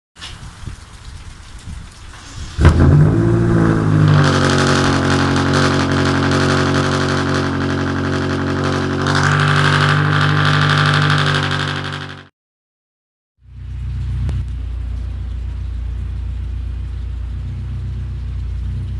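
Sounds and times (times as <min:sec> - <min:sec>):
motor running: 0:02.9 - 0:12.3.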